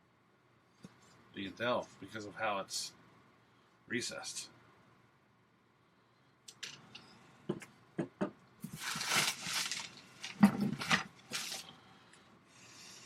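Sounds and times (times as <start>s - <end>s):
packing material rustling: 8.6s - 11.7s.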